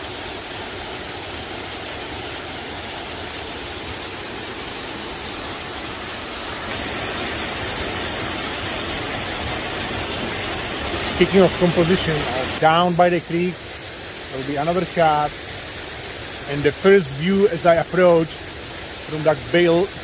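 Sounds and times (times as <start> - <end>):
waterfall rushing: 0.0 - 20.0.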